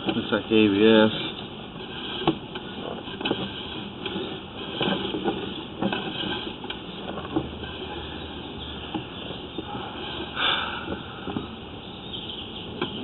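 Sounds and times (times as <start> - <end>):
cable knocking and rattling: 0.0 - 11.8.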